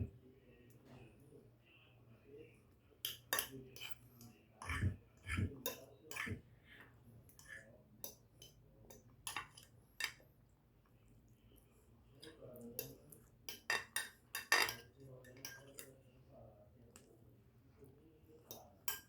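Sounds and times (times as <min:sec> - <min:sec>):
cutlery clinking on a plate: 0:03.1 - 0:06.4, 0:07.3 - 0:10.2, 0:12.2 - 0:16.0, 0:18.4 - 0:19.0.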